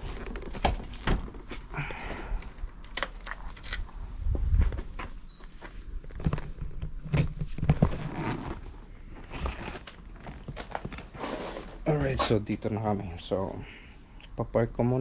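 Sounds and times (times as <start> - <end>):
insect chirring: 0.0 - 15.0
knocks and rustles near microphone: 4.3 - 8.7.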